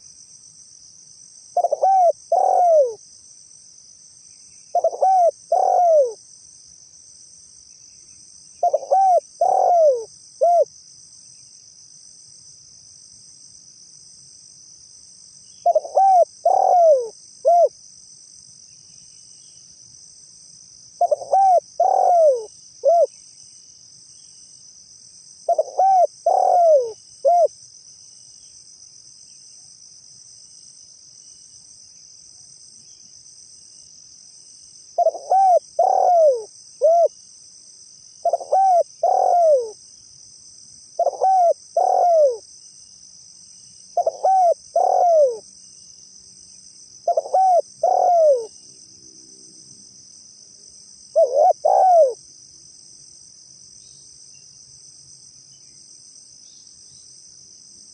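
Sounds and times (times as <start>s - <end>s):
dove cooing: 1.6s - 3.0s, 4.7s - 6.2s, 8.6s - 10.7s, 15.6s - 17.7s, 21.0s - 23.1s, 25.5s - 27.5s, 35.0s - 37.1s, 38.2s - 39.8s, 41.0s - 42.4s, 44.0s - 45.4s, 47.1s - 48.5s, 51.2s - 52.2s.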